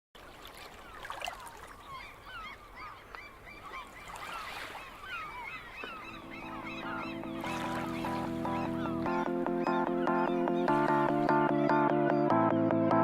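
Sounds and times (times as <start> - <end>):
birds chirping: 0.2 - 13.0
music with held notes: 6.3 - 13.0.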